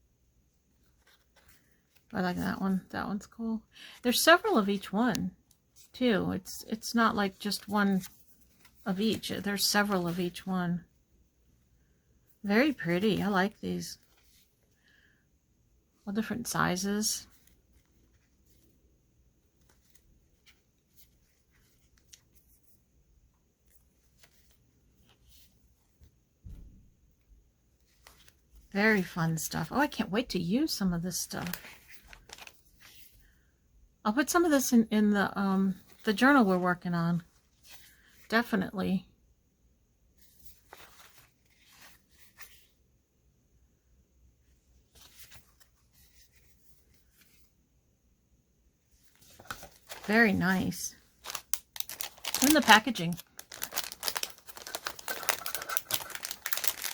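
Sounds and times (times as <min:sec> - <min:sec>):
paper rustling: 0:00.7 - 0:02.2, 0:05.7 - 0:10.4, 0:12.6 - 0:14.8, 0:17.2 - 0:18.9, 0:19.5 - 0:22.8, 0:23.6 - 0:26.2, 0:27.8 - 0:29.9, 0:31.2 - 0:33.3, 0:40.2 - 0:42.8, 0:44.6 - 0:47.6, 0:48.9 - 0:56.9
paper pieces rustling: 0:49.2 - 0:56.9.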